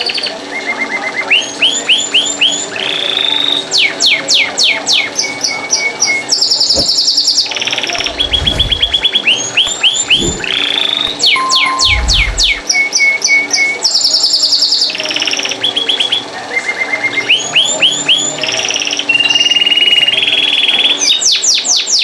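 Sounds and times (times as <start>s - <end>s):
low thuds and rumbles: 8.0s - 9.0s, 10.0s - 10.6s, 11.9s - 12.6s.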